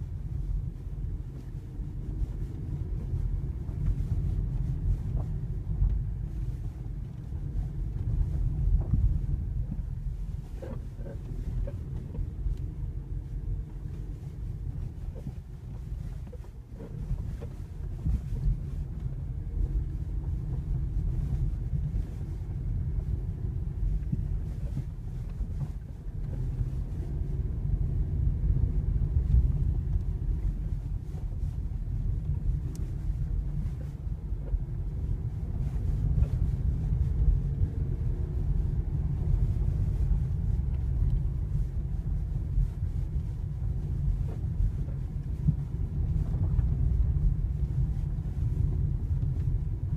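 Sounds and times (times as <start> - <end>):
car road and wind rumble: 0.0 - 49.9.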